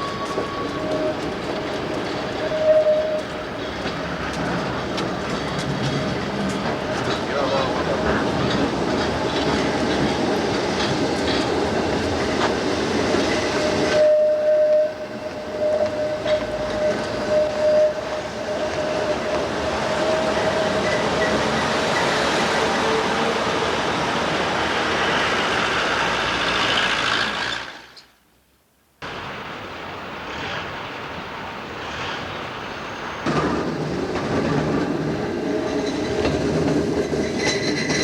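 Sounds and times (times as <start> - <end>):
high wheel squeal: 0.0 - 8.7, 12.9 - 24.2, 35.4 - 38.0
tram running on track: 0.0 - 28.1, 29.0 - 38.0.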